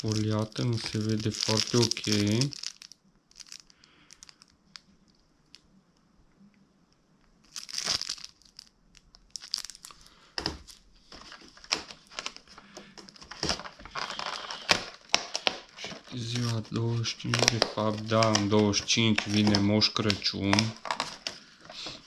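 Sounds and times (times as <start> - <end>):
plastic wrapping crinkling: 0.0 - 5.7, 7.4 - 22.0
cardboard ripping: 13.2 - 22.0.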